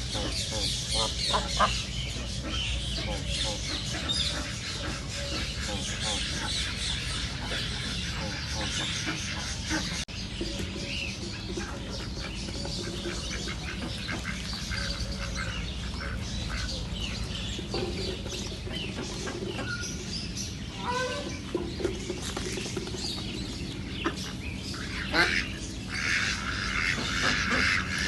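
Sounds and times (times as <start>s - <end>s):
ducks quacking: 0.0s - 28.0s.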